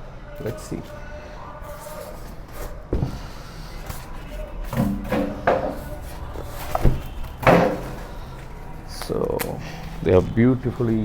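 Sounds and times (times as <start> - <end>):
packaging knocks and rustling: 3.9 - 8.6.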